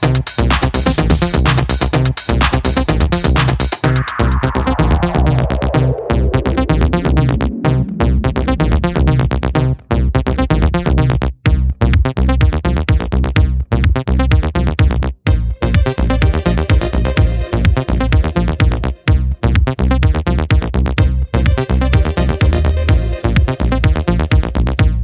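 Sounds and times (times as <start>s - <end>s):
electronic dance music: 0.0s - 9.8s, 15.3s - 20.2s, 21.0s - 25.0s
falling synth sweep: 3.8s - 9.9s.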